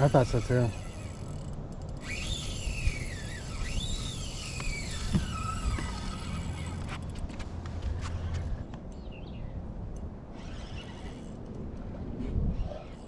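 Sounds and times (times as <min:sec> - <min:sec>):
fishing reel drag whining: 0:00.0 - 0:07.1, 0:10.3 - 0:11.6, 0:12.2 - 0:13.0.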